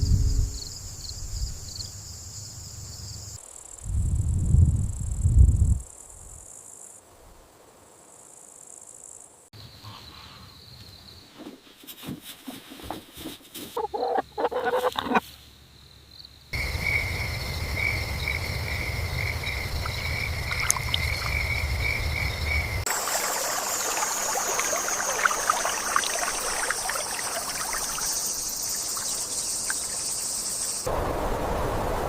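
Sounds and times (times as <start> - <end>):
loud low rumbles: 0.0 - 1.6
crickets chirping: 0.0 - 11.6, 13.7 - 32.0.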